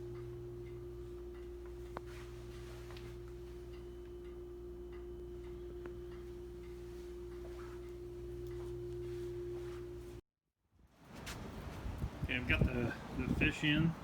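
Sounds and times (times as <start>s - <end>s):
steady hum: 0.0s - 10.2s.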